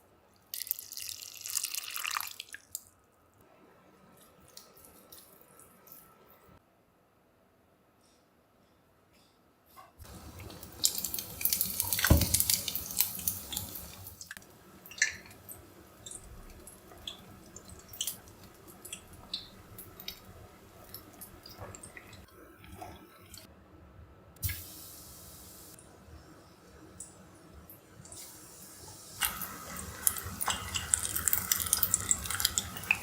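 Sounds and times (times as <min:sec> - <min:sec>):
light water drips: 0:10.0 - 0:23.5, 0:29.2 - 0:33.0
water running and splashing: 0:10.1 - 0:22.3, 0:29.2 - 0:33.0.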